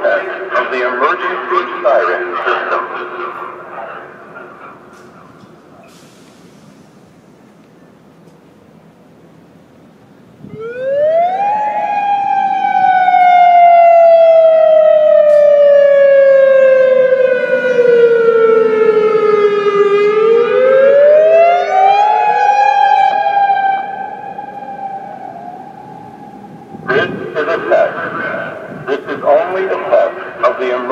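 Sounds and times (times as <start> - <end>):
emergency warning siren: 10.4 - 30.9.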